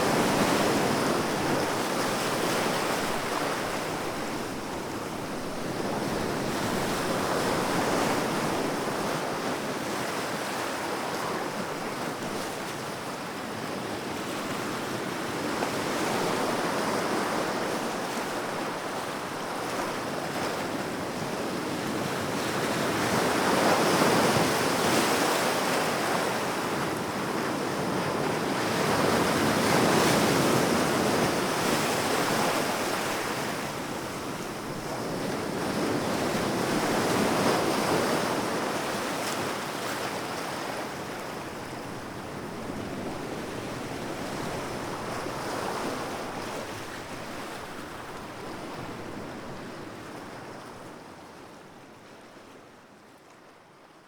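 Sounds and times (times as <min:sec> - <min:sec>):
ocean waves breaking on shore: 0:00.0 - 0:52.6.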